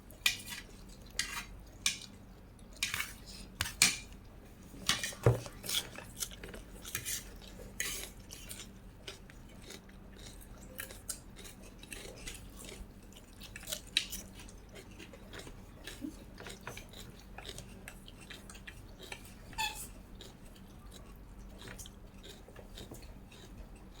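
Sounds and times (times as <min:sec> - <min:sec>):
chewing and biting: 0:05.5 - 0:24.0.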